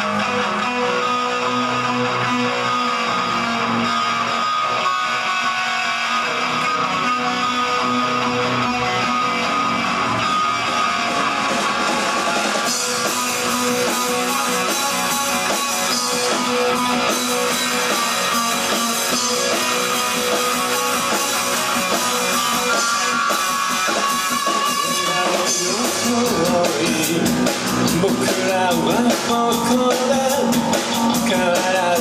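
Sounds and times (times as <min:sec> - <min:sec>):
rock band playing live: 0:00.0 - 0:32.0
cymbals and drums: 0:10.6 - 0:32.0.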